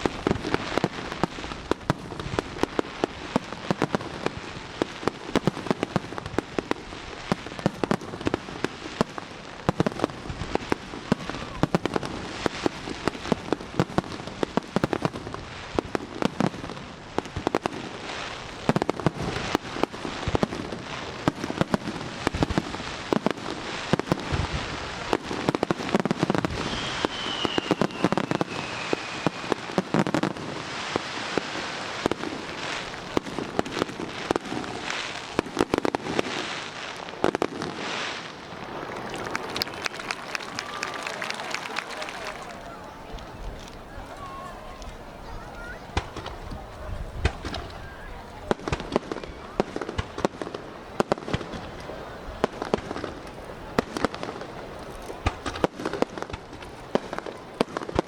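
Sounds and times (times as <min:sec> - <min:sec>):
fireworks crackle: 0:00.0 - 0:58.0
descending high whistling tone: 0:26.6 - 0:29.4
fireworks shells bursting: 0:38.4 - 0:43.9.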